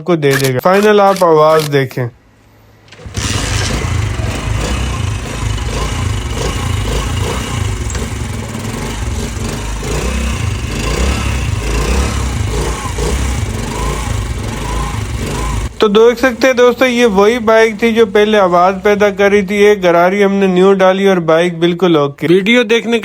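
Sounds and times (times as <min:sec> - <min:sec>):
motorcycle engine running: 0:02.9 - 0:20.7.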